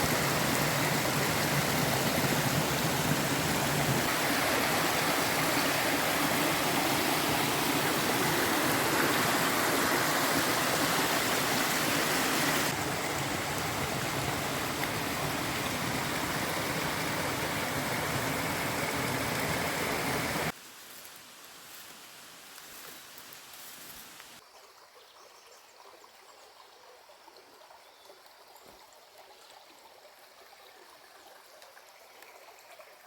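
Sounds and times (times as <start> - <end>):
flowing water rushing: 0.0 - 20.6.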